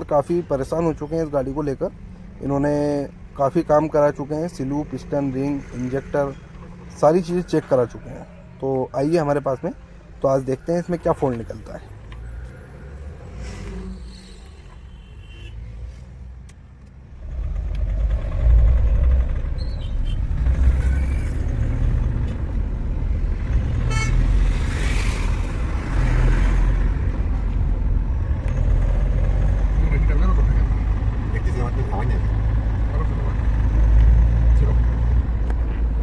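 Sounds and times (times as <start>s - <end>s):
diesel engine running under load: 17.2s - 22.5s.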